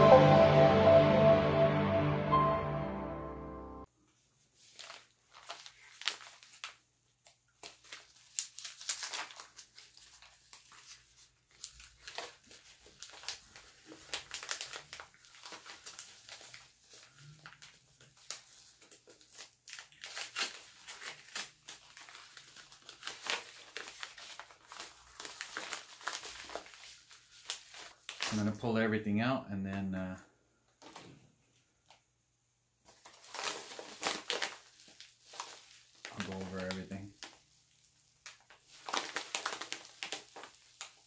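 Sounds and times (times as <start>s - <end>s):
packaging crinkling and tearing: 4.6s - 28.6s, 32.9s - 41.0s.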